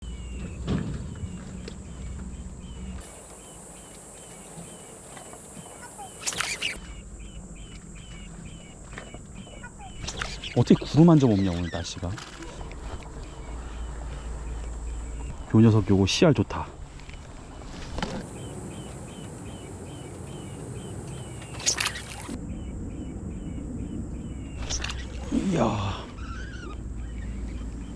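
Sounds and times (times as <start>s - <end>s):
bird chirping: 2.6s - 8.2s, 18.2s - 22.4s
low steady background: 3.0s - 6.8s, 18.2s - 22.4s
noisy rustle or splash: 3.0s - 6.8s, 18.0s - 22.4s.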